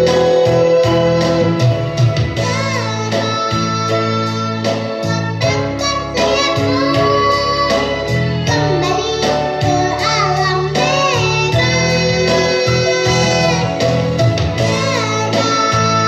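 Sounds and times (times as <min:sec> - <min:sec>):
instrumental backing with beat: 0:00.0 - 0:16.0
child singing: 0:02.4 - 0:13.8, 0:14.6 - 0:16.0.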